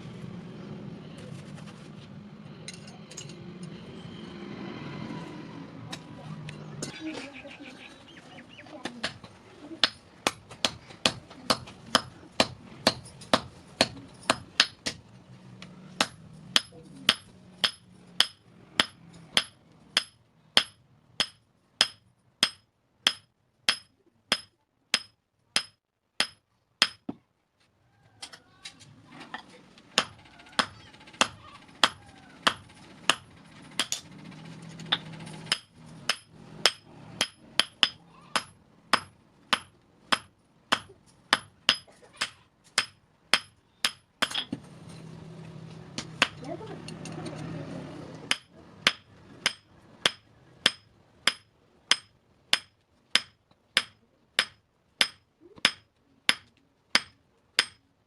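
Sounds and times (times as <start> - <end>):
hammer striking metal on anvil: 16.0 - 27.2, 34.9 - 44.6, 48.3 - 57.8.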